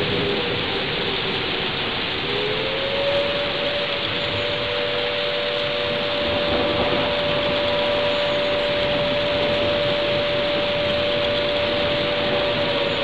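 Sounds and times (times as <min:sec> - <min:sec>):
air raid siren steady note: 0:00.0 - 0:13.0
heavy rain hiss: 0:00.0 - 0:13.0.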